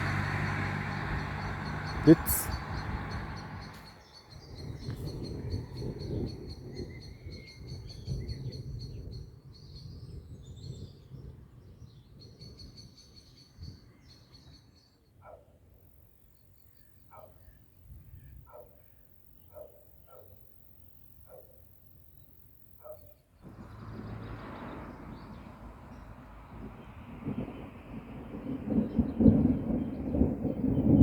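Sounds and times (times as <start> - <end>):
birds calling: 0.0 - 5.4
thunder rumbling: 23.4 - 31.0.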